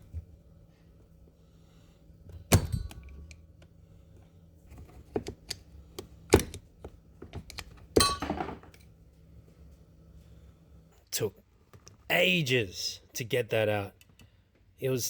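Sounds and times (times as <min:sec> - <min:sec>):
metal tools clanking: 0:08.0 - 0:08.7.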